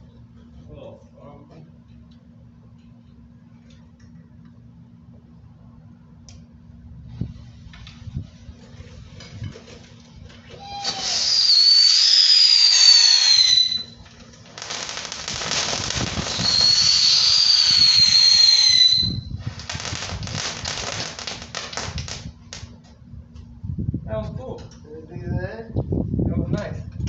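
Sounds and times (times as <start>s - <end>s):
firework shrill whistles: 10.5s - 22.7s
firework crackles: 10.6s - 22.7s
hissing sparks: 10.6s - 22.7s.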